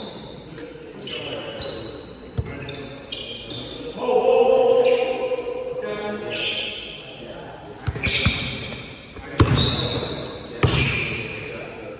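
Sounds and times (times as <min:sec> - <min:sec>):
sneakers squeaking on floor: 0:01.0 - 0:03.8, 0:06.3 - 0:11.8
basketball bouncing: 0:07.9 - 0:11.4.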